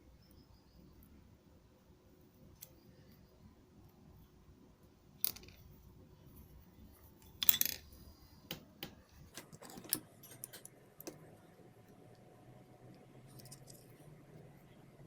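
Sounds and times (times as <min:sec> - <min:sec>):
metal tools clinking and scraping: 0:09.4 - 0:11.2.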